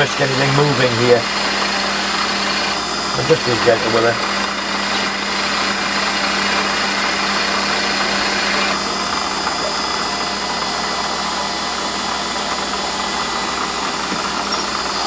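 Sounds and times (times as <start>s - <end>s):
drill cutting into workpiece: 0.0s - 15.0s
lathe motor hum: 0.0s - 15.0s.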